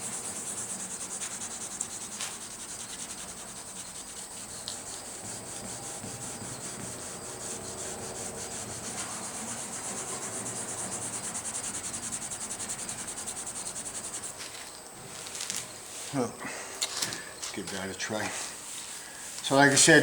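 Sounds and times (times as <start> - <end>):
sandpaper rubbing on panel: 0.0 - 14.6.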